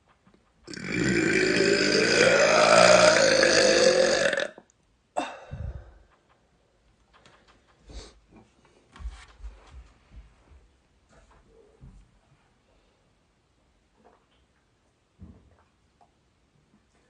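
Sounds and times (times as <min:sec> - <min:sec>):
woman burping loudly: 0:00.7 - 0:05.5.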